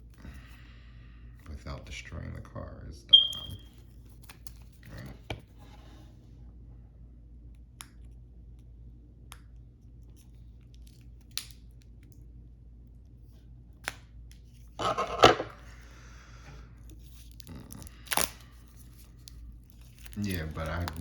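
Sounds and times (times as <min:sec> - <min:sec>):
blade cutting packaging: 0:19.8 - 0:21.0.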